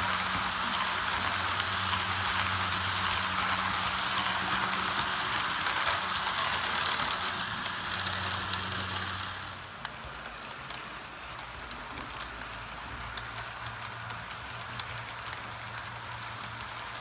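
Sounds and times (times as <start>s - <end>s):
model train motor humming: 0.0s - 17.0s
wheels clicking over rail joints: 0.0s - 17.0s.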